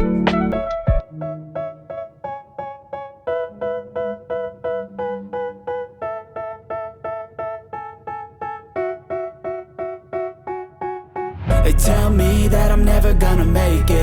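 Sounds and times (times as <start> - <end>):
keyboard repeating a chord: 0.0 - 14.0.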